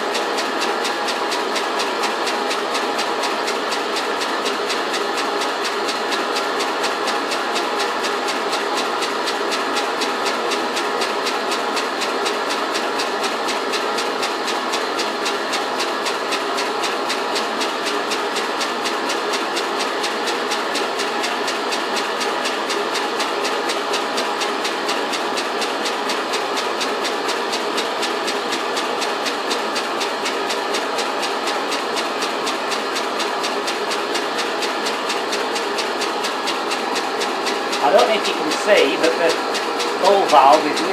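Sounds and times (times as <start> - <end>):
steam engine beating: 0.0 - 40.9
steam hissing: 36.7 - 40.9.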